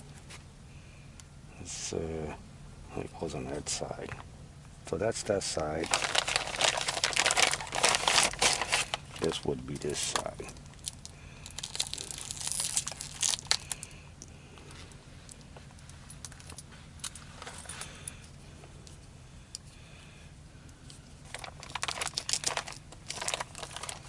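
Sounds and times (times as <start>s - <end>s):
low steady hum: 0.0s - 24.0s
plastic crinkling and rustling: 5.8s - 13.9s, 21.2s - 24.0s.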